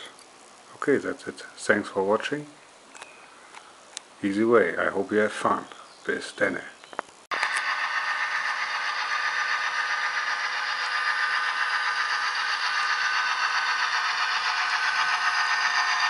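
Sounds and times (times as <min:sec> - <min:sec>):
model locomotive engine sound: 0:07.3 - 0:16.0.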